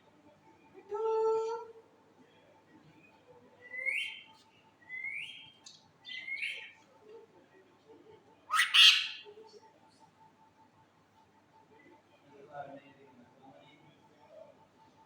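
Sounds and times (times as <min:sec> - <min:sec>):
parrot calling: 0:08.5 - 0:09.2
parrot harsh squawk: 0:08.5 - 0:09.2.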